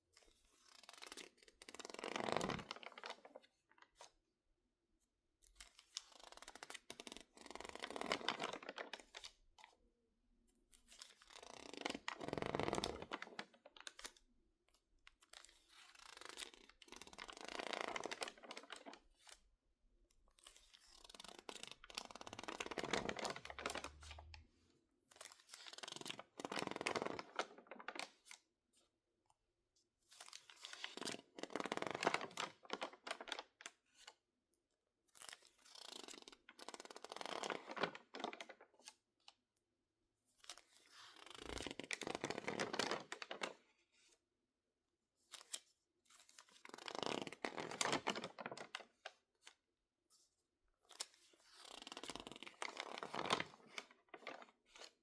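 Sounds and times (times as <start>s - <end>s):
magazine pages crackling: 21.0s - 24.2s, 51.7s - 54.9s.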